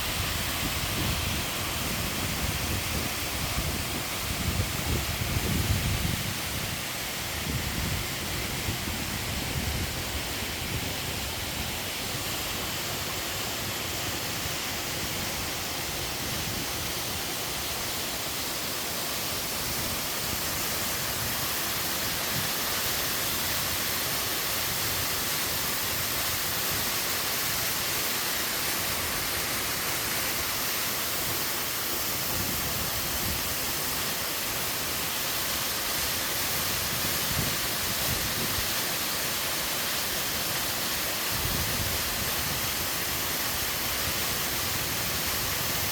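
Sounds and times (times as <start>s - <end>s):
waterfall rushing: 0.0s - 45.9s.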